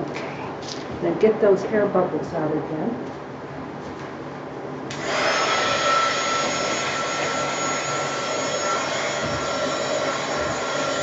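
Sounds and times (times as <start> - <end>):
electric blower whining: 4.9 - 11.0.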